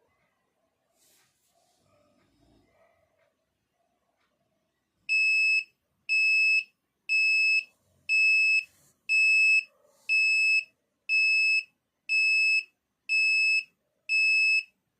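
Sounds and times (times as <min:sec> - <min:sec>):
alarm clock buzzer beeping: 0:05.1 - 0:14.7.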